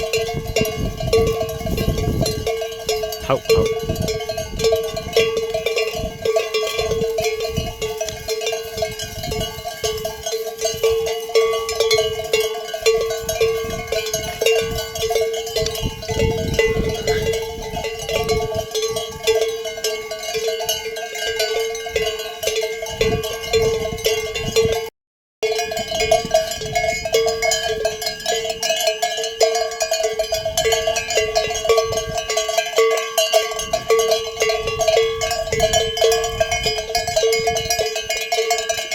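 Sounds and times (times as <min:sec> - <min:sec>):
sheep bells clanking: 0:00.0 - 0:38.9
deep bell ringing: 0:00.1 - 0:20.4.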